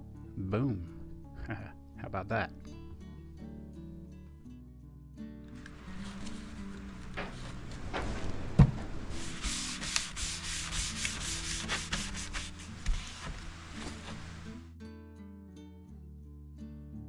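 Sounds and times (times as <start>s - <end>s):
hand sanding wood: 6.0s - 14.6s.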